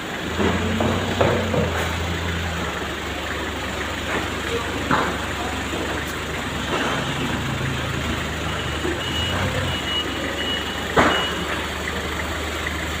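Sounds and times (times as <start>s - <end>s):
vehicle engine running: 0.0s - 13.0s
reversing alarm beeps: 6.8s - 11.7s.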